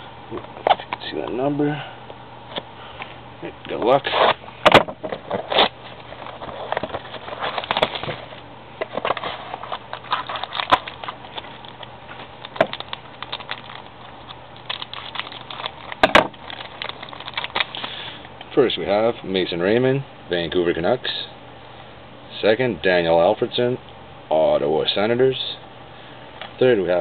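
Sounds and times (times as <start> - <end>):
card pack crinkling and rustling: 3.7 - 18.2.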